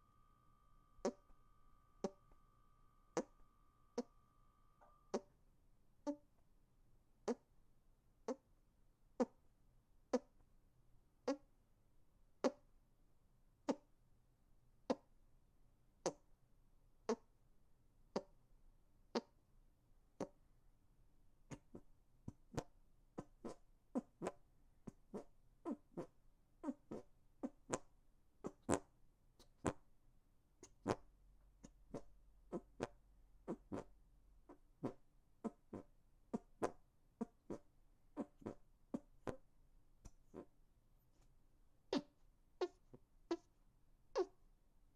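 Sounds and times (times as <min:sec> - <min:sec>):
hand fart noises: 0:01.0 - 0:01.3, 0:07.2 - 0:07.5, 0:09.2 - 0:09.4, 0:10.1 - 0:10.4, 0:11.2 - 0:11.4, 0:12.4 - 0:12.6, 0:13.7 - 0:13.9, 0:16.0 - 0:16.3, 0:17.1 - 0:17.3, 0:18.1 - 0:18.4, 0:19.2 - 0:19.4, 0:20.2 - 0:20.4, 0:21.5 - 0:29.8, 0:30.6 - 0:39.4, 0:40.0 - 0:40.5, 0:41.9 - 0:43.5, 0:44.1 - 0:44.4.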